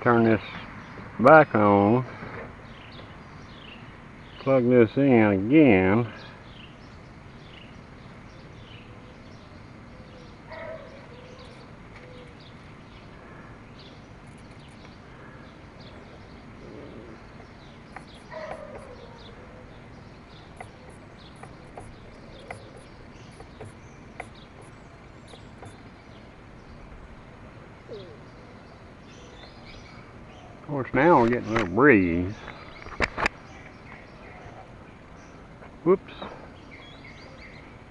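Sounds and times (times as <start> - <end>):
birds calling: 0.0 - 37.9
outdoor background noise: 0.0 - 37.9.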